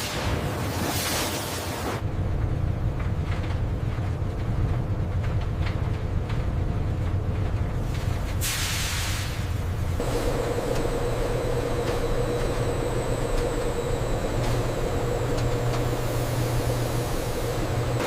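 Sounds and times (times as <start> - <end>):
hiss: 8.3 - 13.8
factory machinery humming: 9.8 - 18.0
mid-pitched whine: 10.0 - 18.0.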